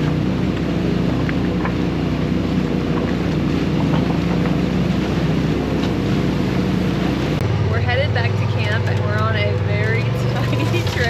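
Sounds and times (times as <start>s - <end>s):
utility vehicle engine running: 0.0s - 11.0s.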